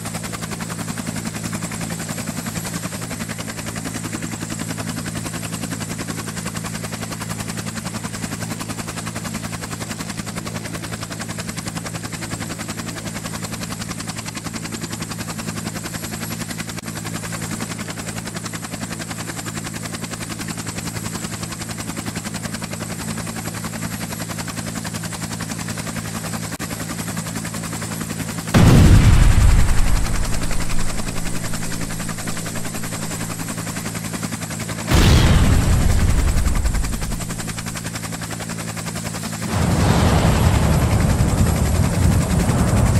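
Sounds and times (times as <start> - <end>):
helicopter hum: 0.0 - 42.9
loud blast: 28.6 - 33.7, 34.9 - 37.8, 39.4 - 42.9.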